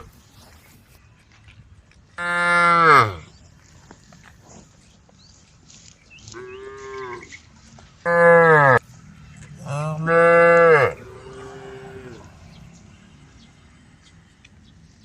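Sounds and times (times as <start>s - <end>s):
cows mooing: 2.2s - 3.3s, 8.0s - 12.7s.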